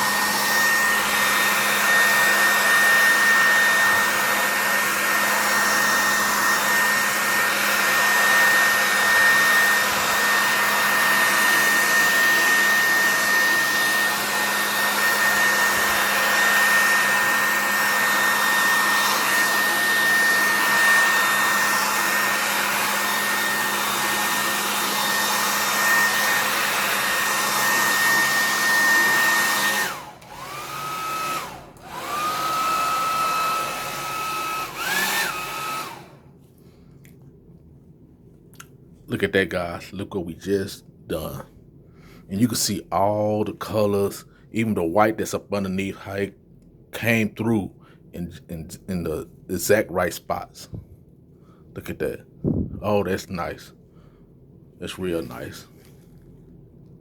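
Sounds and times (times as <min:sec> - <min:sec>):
hair dryer blowing with whine: 0:00.0 - 0:36.6, 0:52.4 - 0:53.5.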